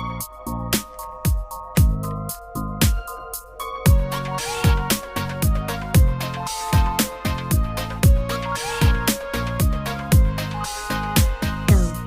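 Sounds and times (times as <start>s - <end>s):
electronic music: 0.0s - 12.0s
hi-hat ticks: 0.0s - 12.0s
kick drum hits: 1.3s - 2.0s, 11.7s - 12.0s.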